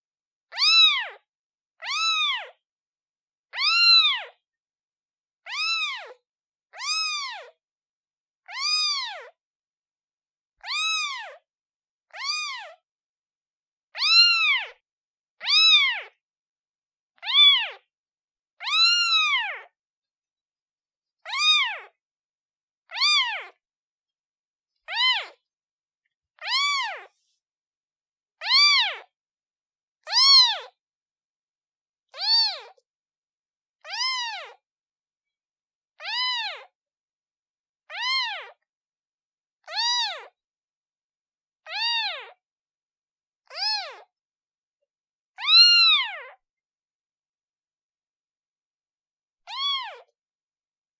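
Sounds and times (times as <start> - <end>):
kitten meowing: 0.5 - 1.2, 1.8 - 2.6, 3.6 - 4.4, 5.5 - 6.2, 6.8 - 7.6, 8.4 - 9.4, 10.6 - 11.4, 12.1 - 12.8, 14.0 - 14.8, 15.4 - 16.2, 17.2 - 17.8, 18.6 - 19.7, 21.2 - 21.9, 22.9 - 23.6, 24.9 - 25.4, 26.4 - 27.4, 28.4 - 29.1, 30.0 - 30.8, 32.1 - 32.8, 33.9 - 34.6, 36.0 - 36.7, 37.9 - 38.6, 39.6 - 40.3, 41.7 - 42.4, 43.5 - 44.1, 45.4 - 46.4, 49.5 - 50.1.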